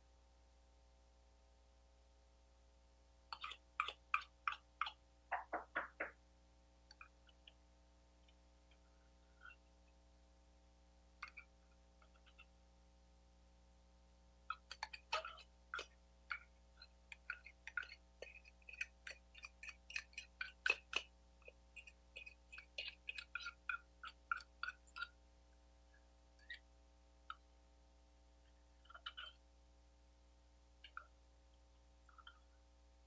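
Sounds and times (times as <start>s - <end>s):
small clicks and taps: 3.4s - 6.2s.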